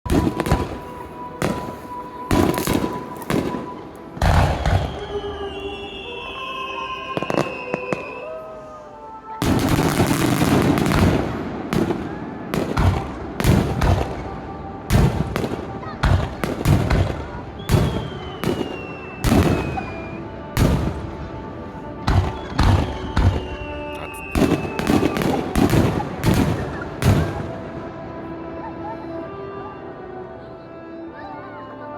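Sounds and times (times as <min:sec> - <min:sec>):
fireworks booming: 0:00.1 - 0:06.0, 0:09.4 - 0:21.4, 0:22.0 - 0:27.7
fireworks crackling: 0:00.1 - 0:27.8
descending whistling tone: 0:04.6 - 0:08.9.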